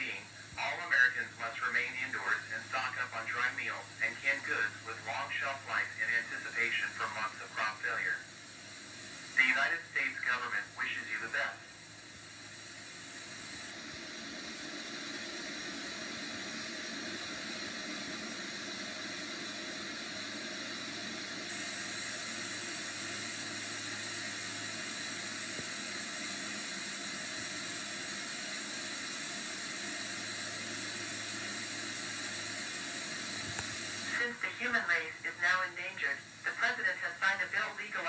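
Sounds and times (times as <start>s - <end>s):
low electrical hum: 0.0s - 38.0s
static hiss: 0.0s - 38.0s.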